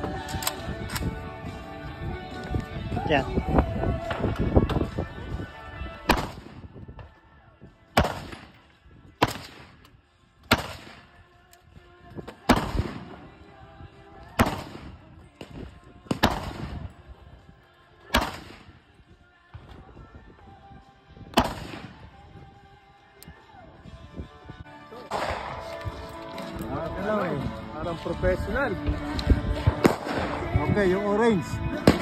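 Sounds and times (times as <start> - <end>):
faint music: 0.0 - 32.0
gunshots with echo: 25.1 - 25.7, 29.8 - 30.6.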